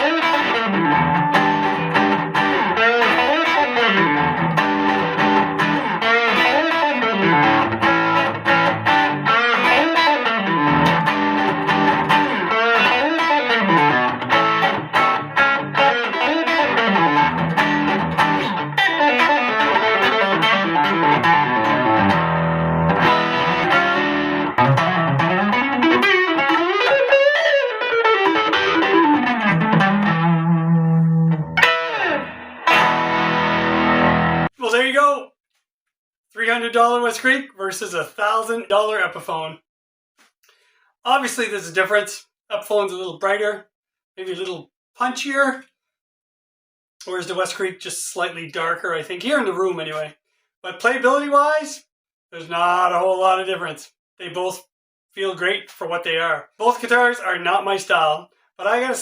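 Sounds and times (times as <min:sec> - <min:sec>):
electric guitar lead lines: 0:00.0 - 0:34.5.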